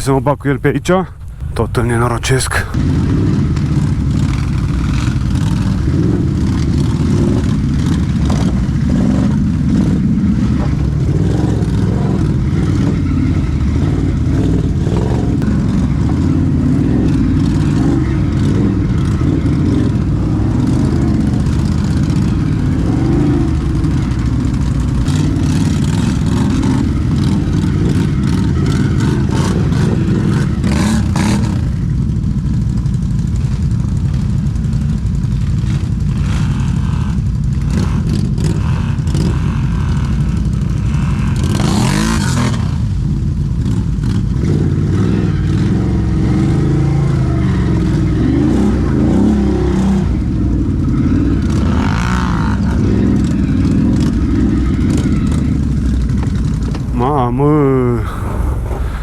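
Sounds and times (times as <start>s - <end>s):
atv engine running: 2.7s - 59.0s.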